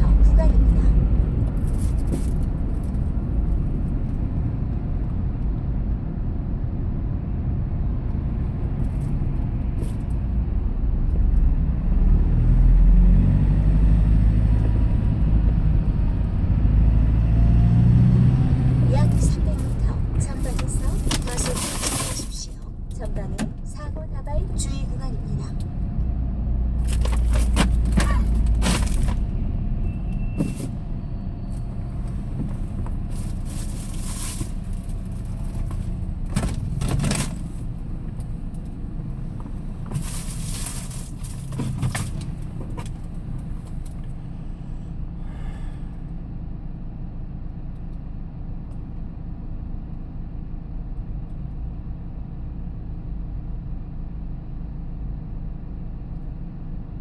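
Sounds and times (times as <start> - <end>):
road rumble: 0.0 - 57.0
vehicle engine drone: 0.0 - 57.0
rattles and scrapes: 0.6 - 4.4, 8.5 - 10.3, 18.9 - 23.7, 26.7 - 30.9, 31.5 - 44.3.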